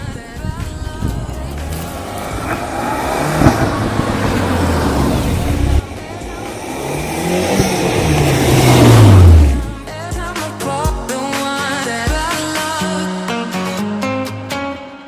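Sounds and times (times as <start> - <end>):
car engine revving: 1.0 - 10.0.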